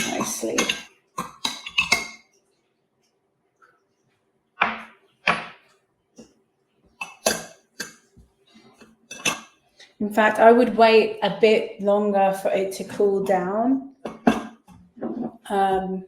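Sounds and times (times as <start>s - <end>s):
dishes and utensils knocking: 0.0s - 2.2s, 4.6s - 5.7s, 7.0s - 8.0s, 9.1s - 9.4s, 14.0s - 15.4s.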